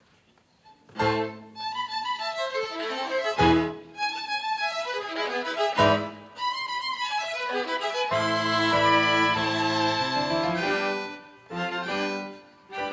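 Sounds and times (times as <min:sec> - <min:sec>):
violin playing hymn melody: 0:00.6 - 0:12.9
orchestral accompaniment chords: 0:07.6 - 0:12.9.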